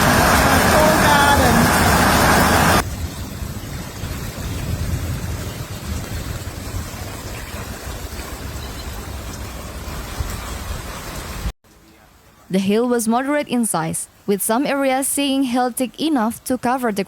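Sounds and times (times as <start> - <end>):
wind buffeting microphone: 0.0 - 11.4.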